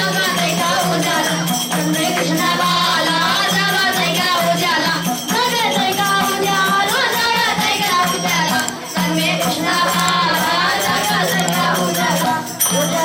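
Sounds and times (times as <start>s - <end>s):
children singing devotional song: 0.0s - 13.0s
jingling percussion: 0.0s - 13.0s.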